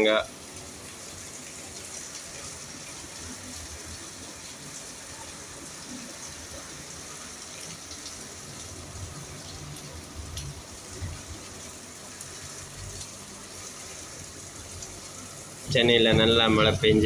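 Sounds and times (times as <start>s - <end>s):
heavy rain hissing: 0.0s - 17.0s
low rumbles: 15.7s - 17.0s.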